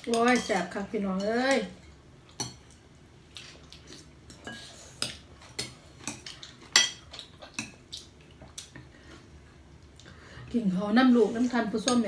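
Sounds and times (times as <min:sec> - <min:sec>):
cutlery clinking against plates: 0:00.0 - 0:00.8, 0:04.3 - 0:07.8.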